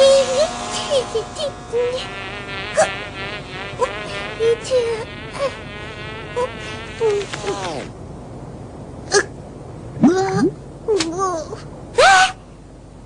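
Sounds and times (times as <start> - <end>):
cartoon fly buzzing: 0.0 - 8.0.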